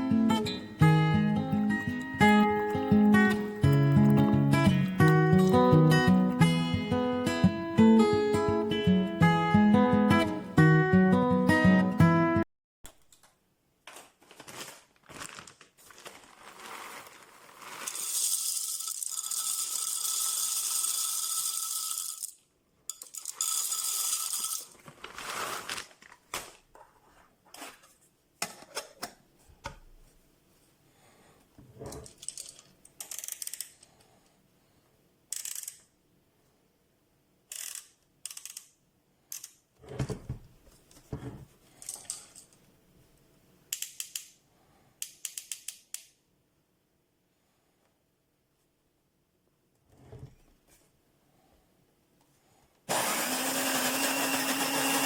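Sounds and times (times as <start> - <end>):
coffee grinder whining: 17.6 - 22.3, 52.9 - 55.0
plastic parts clicking: 31.9 - 34.0, 35.3 - 35.9, 37.5 - 39.6, 43.7 - 44.4, 45.0 - 46.2.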